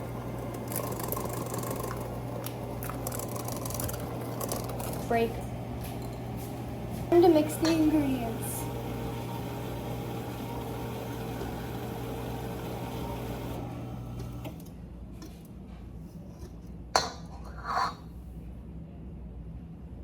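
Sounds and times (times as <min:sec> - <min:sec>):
electric mixer motor hum: 0:00.0 - 0:14.7.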